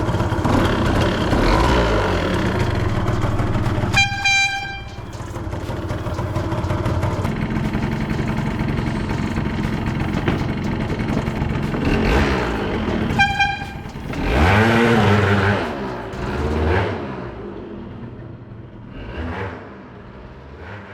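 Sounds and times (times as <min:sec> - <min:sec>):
scooter engine revving: 0:00.0 - 0:20.9
electric horn toot: 0:00.2 - 0:07.1, 0:11.8 - 0:16.4.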